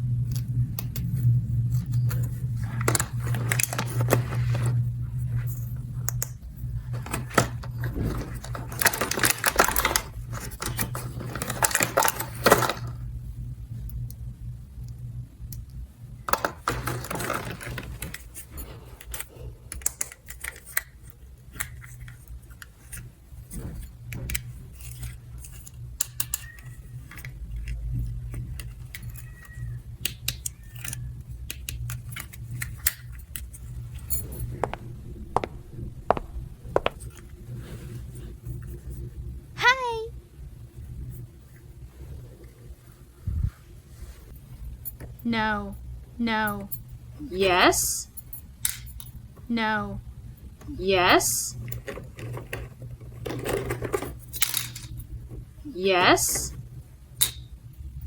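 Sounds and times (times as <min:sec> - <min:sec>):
steady low hum: 0:00.0 - 0:58.0
plastic pieces clicking: 0:07.0 - 0:12.9, 0:28.4 - 0:33.6, 0:53.3 - 0:55.0.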